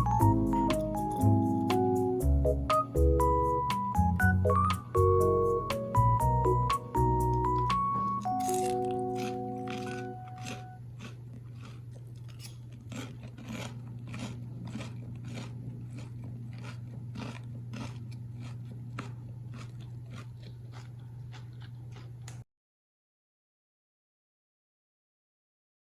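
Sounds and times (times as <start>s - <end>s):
low electrical hum: 0.0s - 22.4s
crunchy food being chewed: 7.2s - 22.4s.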